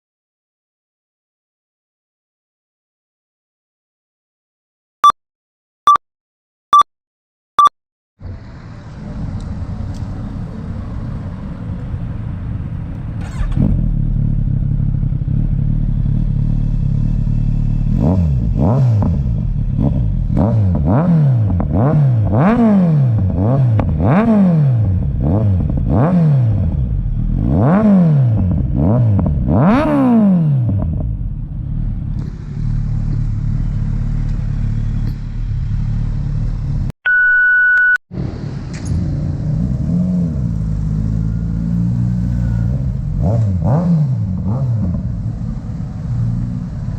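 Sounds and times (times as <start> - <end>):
motorcycle engine idling and revving: 8.2 - 36.9, 38.2 - 46.9
short electronic beeps: 37.0 - 38.0.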